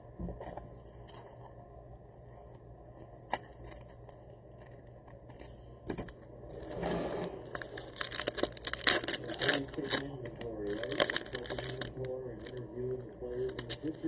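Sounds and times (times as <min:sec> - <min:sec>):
card wrapper crinkling and rustling: 0:03.2 - 0:05.6, 0:07.4 - 0:14.0.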